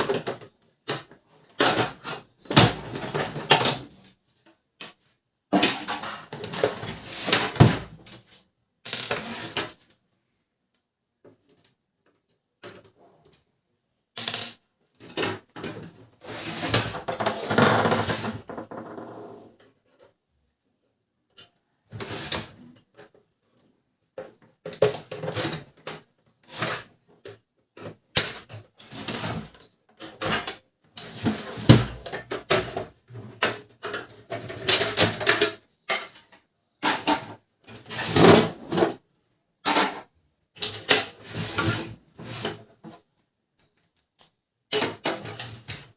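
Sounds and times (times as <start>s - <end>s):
plastic parts clicking and scraping: 21.3s - 39.0s.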